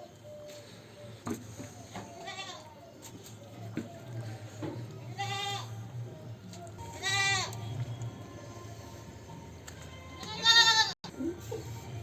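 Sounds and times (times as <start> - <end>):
goats bleating: 5.1 - 5.7, 7.0 - 7.6, 10.2 - 11.0.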